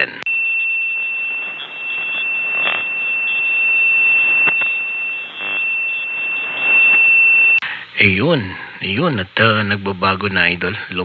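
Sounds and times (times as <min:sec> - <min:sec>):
radio crackles: 0:00.0 - 0:10.6
radio receiver hiss: 0:00.0 - 0:11.0
high-pitched whistle: 0:00.3 - 0:07.6.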